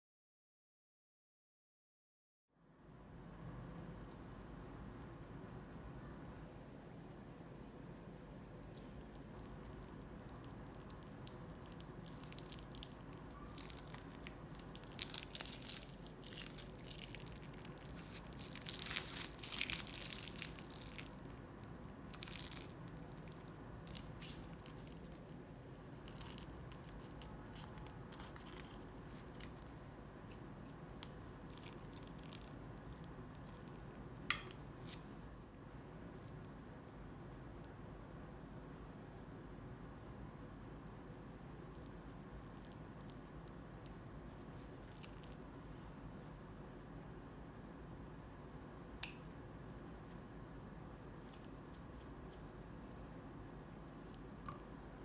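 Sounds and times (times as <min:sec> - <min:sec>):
slime being worked by hand: 0:08.6 - 0:25.4, 0:26.0 - 0:35.1.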